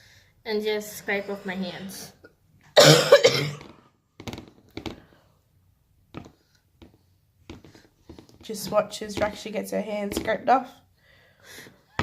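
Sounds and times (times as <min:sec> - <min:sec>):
cough-like vocal burst: 0:02.8 - 0:03.7.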